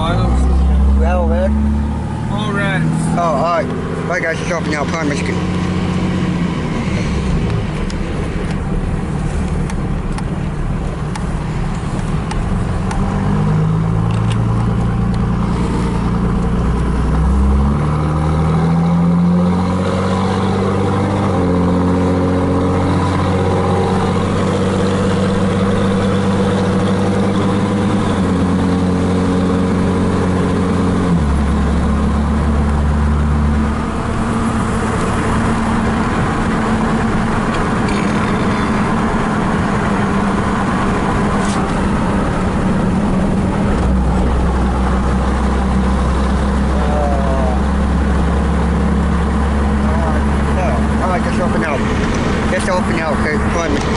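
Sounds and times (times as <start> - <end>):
car engine: 0.0 - 53.9
road noise: 0.0 - 53.9.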